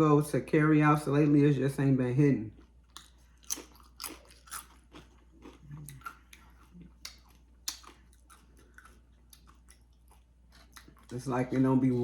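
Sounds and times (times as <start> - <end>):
tortilla chips crunching: 2.4 - 11.6.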